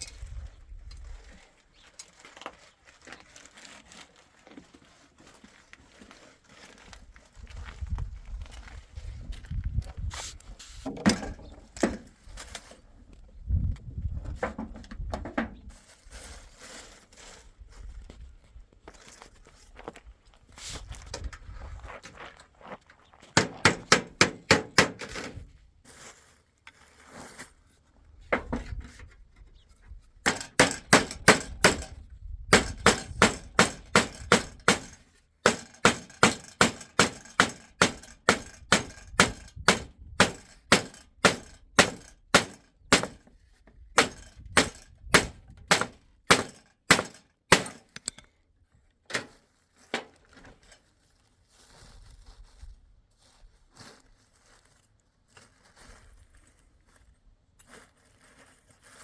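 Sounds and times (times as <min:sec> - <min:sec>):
hammer blows on wooden boards: 0:23.4 - 0:25.3, 0:30.2 - 0:43.3, 0:43.9 - 0:48.0.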